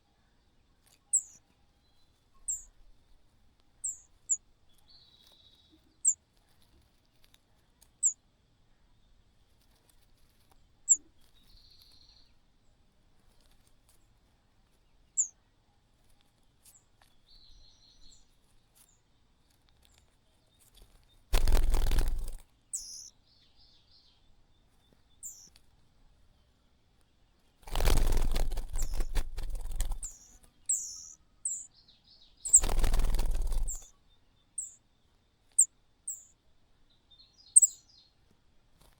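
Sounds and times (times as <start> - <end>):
bird chicks chirping: 0.8 - 3.1, 3.8 - 6.6, 7.9 - 8.2, 10.8 - 12.4, 14.7 - 15.4, 16.0 - 18.4, 20.6 - 25.6, 27.4 - 34.8, 35.5 - 38.2
wing-flapping and rustling: 20.6 - 23.1, 27.6 - 31.6, 32.5 - 33.9.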